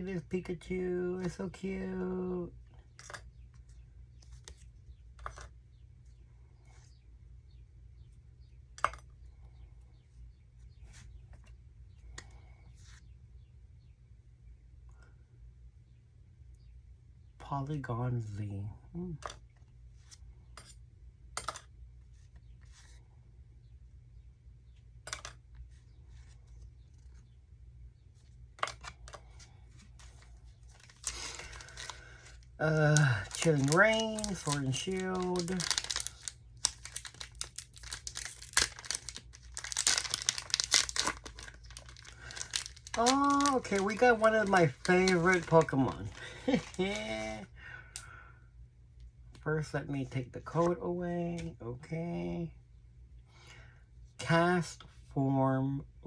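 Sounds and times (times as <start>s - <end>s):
low steady hum: 0.0s - 56.0s
trading cards shuffled by hand: 28.6s - 47.4s.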